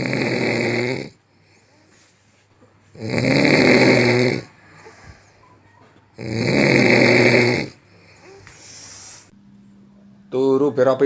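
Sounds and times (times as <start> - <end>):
person snoring loudly: 0.0 - 1.2, 3.0 - 4.6, 6.2 - 7.8.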